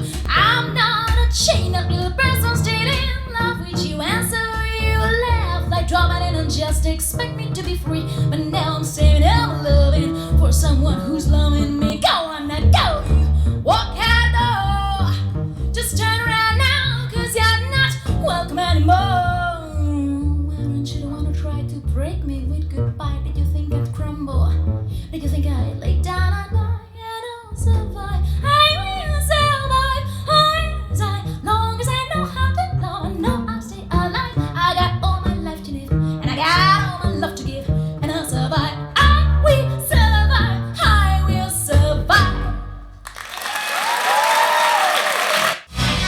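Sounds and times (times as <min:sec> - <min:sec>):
pop song with singing: 0:00.0 - 0:12.9.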